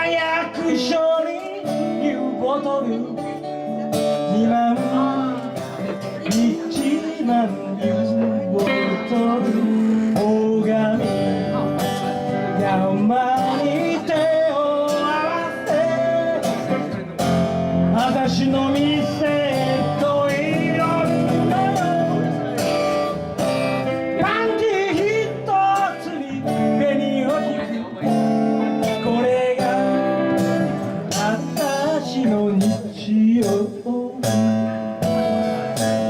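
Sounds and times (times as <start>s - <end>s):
strummed acoustic guitar: 0.0s - 36.0s.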